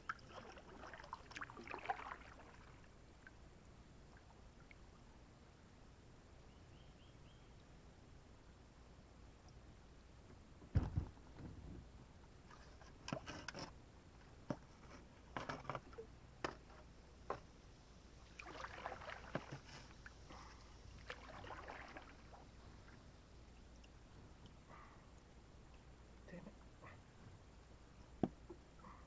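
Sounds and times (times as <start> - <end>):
paddle splashing: 0.0 - 2.9, 18.3 - 23.1
heavy thump: 10.7 - 11.6.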